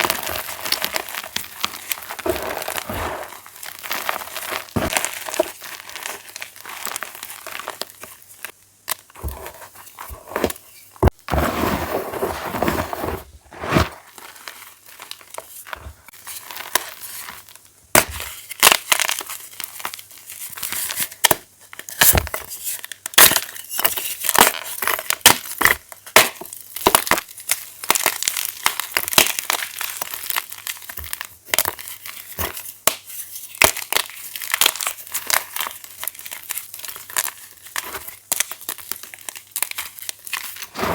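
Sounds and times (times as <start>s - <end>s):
chalk blocks crunching: 0.0s - 7.9s, 9.1s - 17.3s, 39.6s - 40.9s.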